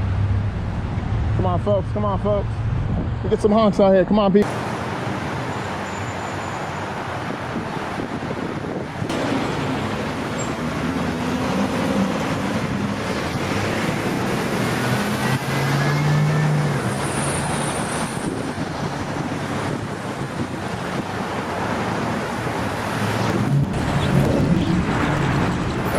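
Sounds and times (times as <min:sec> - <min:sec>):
road traffic passing: 0:00.0 - 0:25.9.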